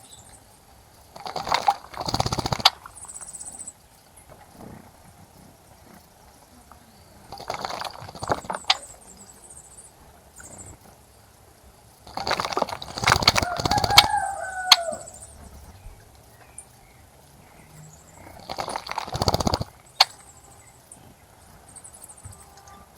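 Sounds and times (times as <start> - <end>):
birds splashing in water: 0.0 - 22.9
small birds chirping: 0.0 - 22.9
rooster crowing: 13.1 - 15.7.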